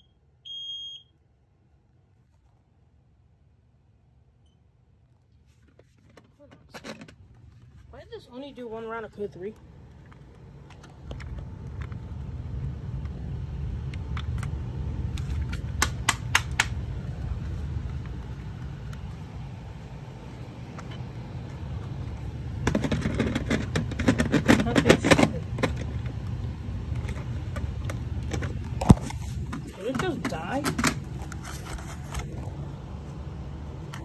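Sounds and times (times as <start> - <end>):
steady low rumble: 7.1 - 34.0
smoke detector clicks and rattles: 15.2 - 16.8.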